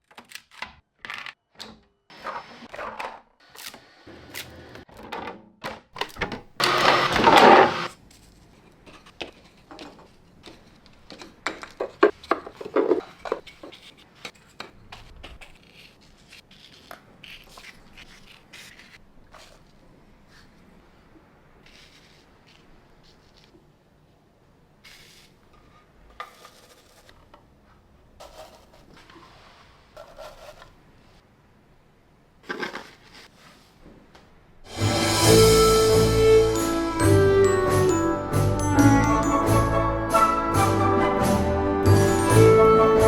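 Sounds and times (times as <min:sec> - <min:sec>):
loud rushing noise: 0:34.7 - 0:36.4.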